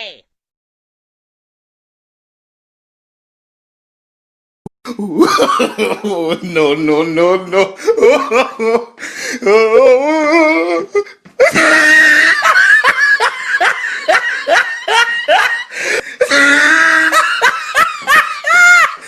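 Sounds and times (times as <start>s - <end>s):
person laughing loudly: 4.9s - 19.0s.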